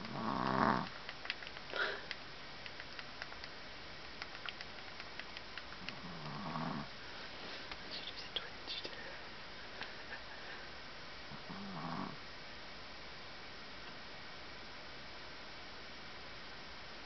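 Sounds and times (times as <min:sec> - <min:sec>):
puppy snoring: 0:00.0 - 0:00.9, 0:05.9 - 0:06.9, 0:11.3 - 0:12.2
soft breath: 0:01.7 - 0:02.2, 0:06.8 - 0:10.8.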